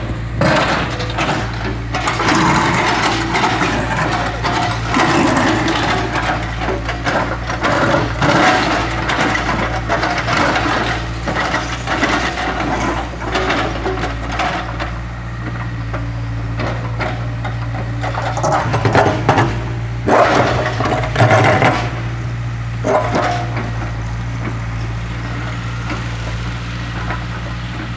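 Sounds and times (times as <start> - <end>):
diesel engine running: 0.0 - 27.9
concrete cracking and knocking: 0.4 - 15.0, 16.6 - 22.0.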